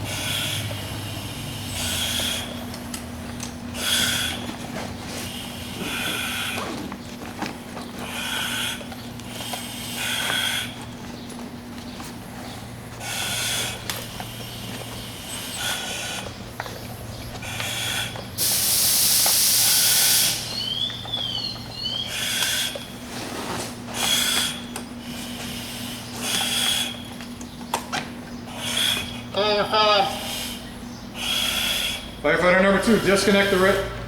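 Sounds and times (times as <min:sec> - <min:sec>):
compressed air hissing: 0:00.0 - 0:07.0, 0:13.0 - 0:16.6, 0:17.4 - 0:27.1, 0:28.5 - 0:34.0
breathing through respirator: 0:00.0 - 0:11.3, 0:12.2 - 0:20.8, 0:21.8 - 0:27.2, 0:28.4 - 0:34.0
steady low hum: 0:00.0 - 0:34.0.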